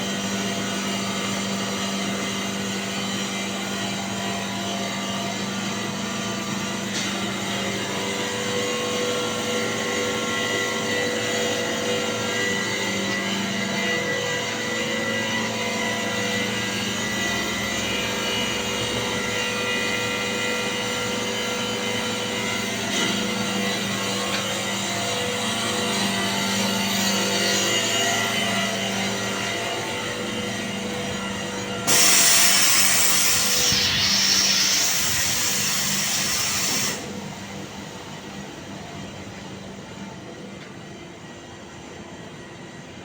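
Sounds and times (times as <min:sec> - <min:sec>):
air compressor hum: 0:00.0 - 0:43.0
high whine: 0:27.3 - 0:39.5.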